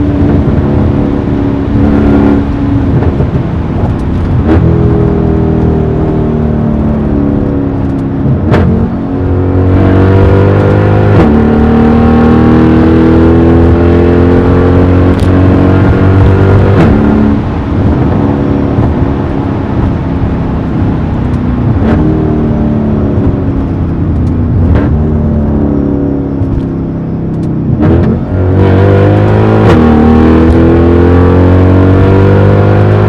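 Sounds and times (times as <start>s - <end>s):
car exhaust accelerating hard: 0.0s - 33.0s
exhaust crack at gear shift: 6.6s - 9.9s, 23.0s - 28.3s.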